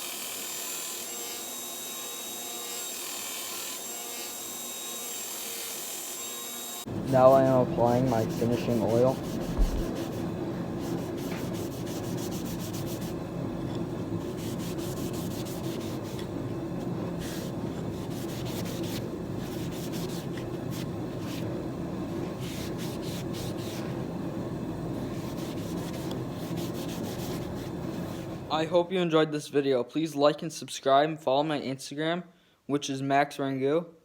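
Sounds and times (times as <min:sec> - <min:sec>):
steady low hum: 0:06.9 - 0:28.7
hand rubbing wood handle: 0:07.2 - 0:13.2, 0:25.1 - 0:28.4.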